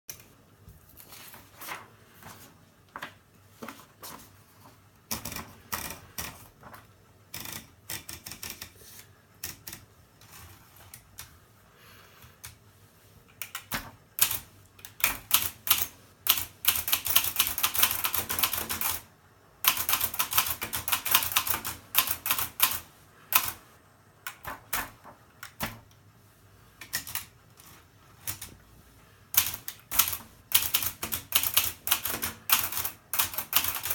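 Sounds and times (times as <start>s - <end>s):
typewriter keys clacking: 5.1s - 8.8s, 13.4s - 19.0s, 19.7s - 22.8s, 23.4s - 23.6s, 26.8s - 28.5s, 29.4s - 33.9s.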